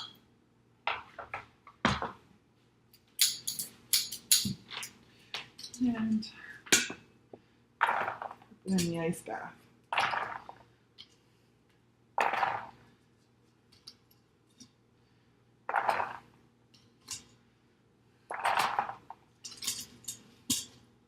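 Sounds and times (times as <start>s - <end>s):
eggs clattering: 9.9s - 10.6s, 12.2s - 12.8s, 15.7s - 16.3s, 18.3s - 20.7s.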